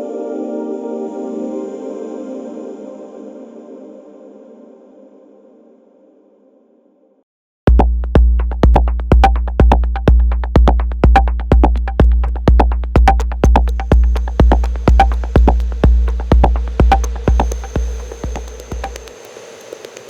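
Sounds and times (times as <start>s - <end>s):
deep kick drum: 7.7s - 19.1s
clicky electronic percussion: 7.7s - 20.0s.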